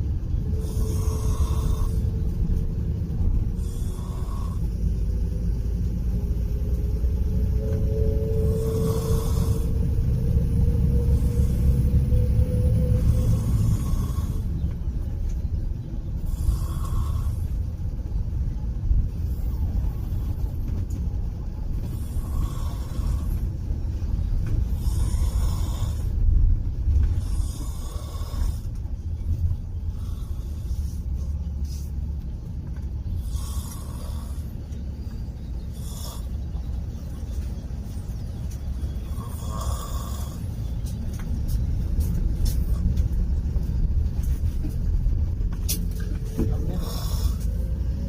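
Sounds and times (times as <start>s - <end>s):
bus rumbling: 0.0s - 48.0s
person snoring: 0.6s - 2.1s, 3.6s - 4.7s, 8.5s - 9.8s, 13.0s - 14.4s, 39.1s - 40.5s, 46.6s - 47.6s.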